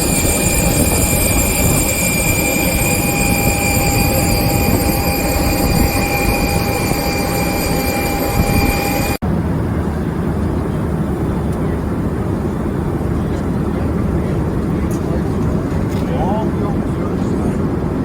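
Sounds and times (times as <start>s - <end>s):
dull noise: 0.0s - 9.2s
jet engines whining: 0.0s - 18.0s.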